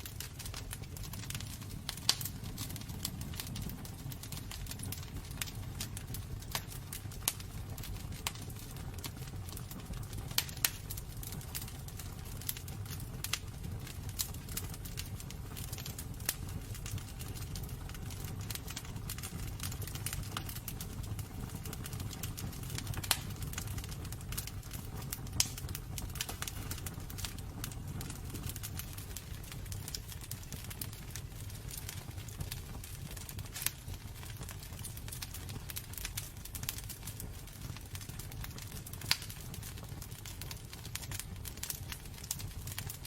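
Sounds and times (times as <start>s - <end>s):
burning wood crackling and popping: 0.0s - 43.0s
low roar of flames: 0.0s - 43.0s.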